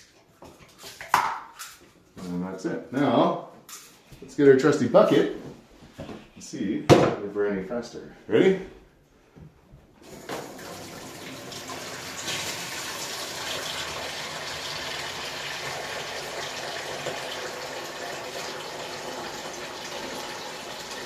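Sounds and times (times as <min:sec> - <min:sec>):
water pouring into a bucket: 0:10.0 - 0:21.0.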